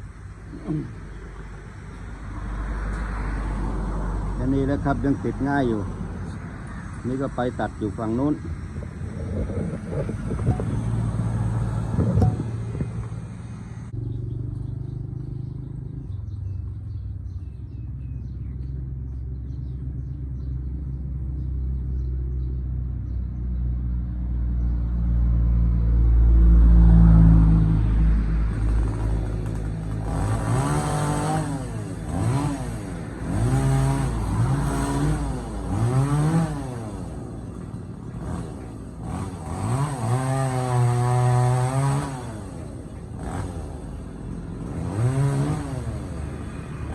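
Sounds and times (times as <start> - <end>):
chainsaw engine revving: 28.4 - 46.9.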